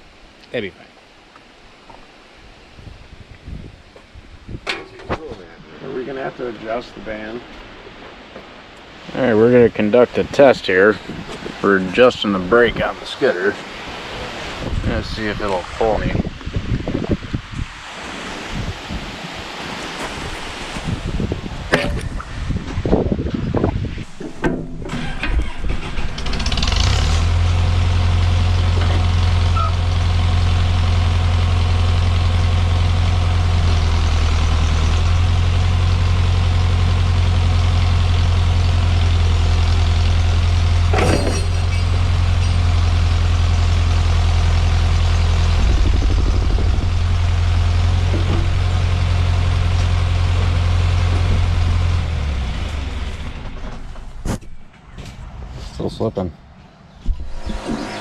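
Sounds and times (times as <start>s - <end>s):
diesel engine under load: 24.0s - 55.6s
sharp metal clank: 40.9s - 43.0s.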